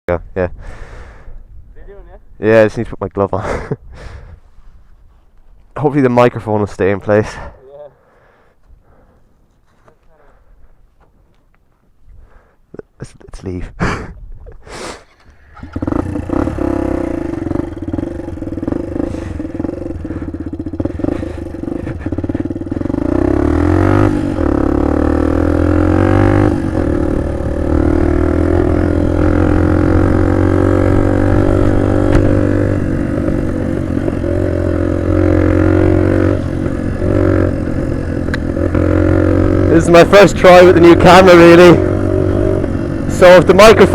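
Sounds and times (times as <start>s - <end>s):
small motorcycle engine: 15.0s - 43.9s.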